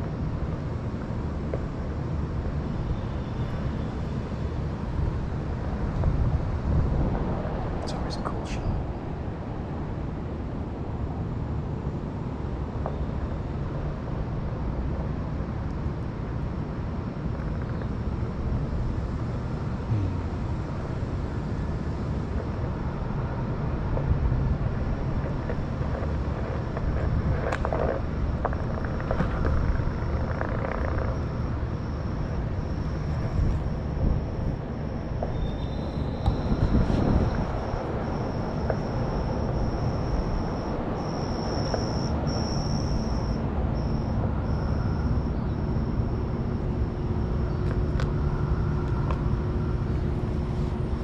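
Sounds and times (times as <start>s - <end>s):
street ambience rumble: 0.0s - 51.0s
wind on microphone: 19.8s - 51.0s.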